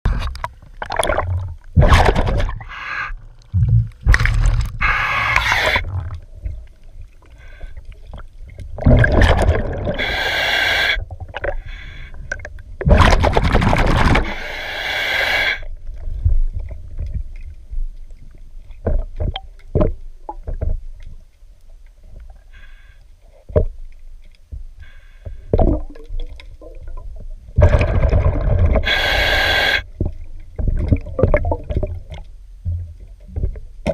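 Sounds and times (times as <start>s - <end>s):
clicks and scrapes against hull: 0.1s - 2.7s, 15.9s - 22.4s, 29.9s - 33.9s
diver exhaling bubbles underwater: 8.8s - 11.6s, 27.6s - 29.9s.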